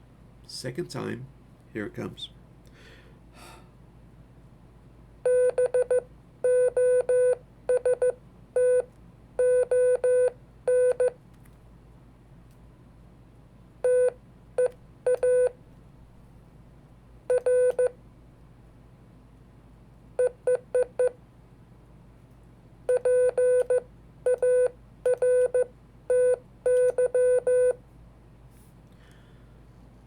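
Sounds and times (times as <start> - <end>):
morse code beeps: 5.3 - 8.8, 9.4 - 11.1, 22.9 - 27.8.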